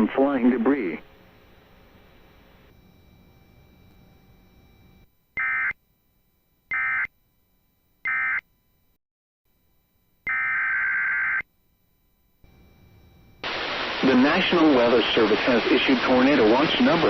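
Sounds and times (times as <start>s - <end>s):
faint radio hiss: 0.0s - 4.6s, 12.5s - 17.0s
alert data bursts buzzing warble: 2.6s - 5.8s, 6.7s - 7.1s.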